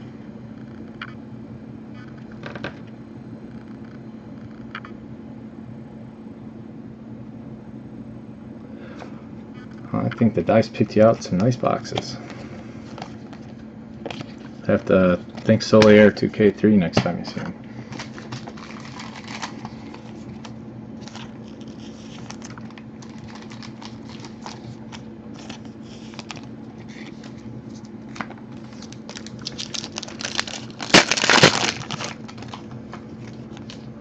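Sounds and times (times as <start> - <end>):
cards clicking and rustling: 11.0 - 16.0, 16.9 - 33.9
plastic wrapper crinkling: 17.8 - 33.9.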